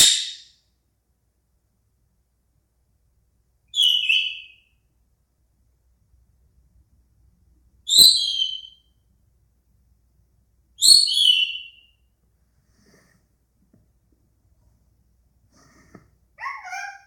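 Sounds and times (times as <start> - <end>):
parakeet shrill calls: 0.0 - 0.4, 3.7 - 4.6, 7.9 - 8.8, 10.8 - 11.9, 16.4 - 17.0.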